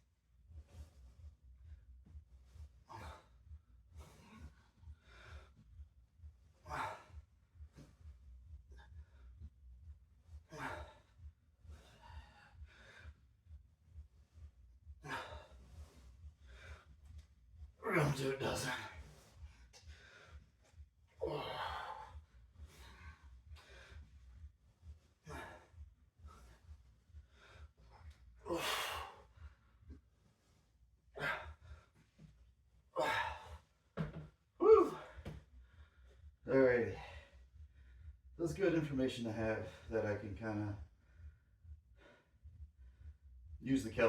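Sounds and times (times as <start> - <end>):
man breathing hard: 2.5 - 5.8, 10.2 - 17.8, 18.4 - 30.6, 31.2 - 38.3, 40.8 - 43.2.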